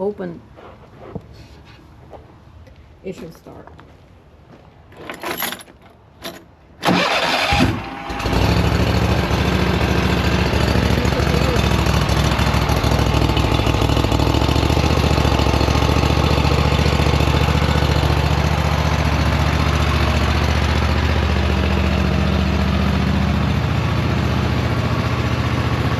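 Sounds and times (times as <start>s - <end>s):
mower engine running: 6.8s - 25.9s.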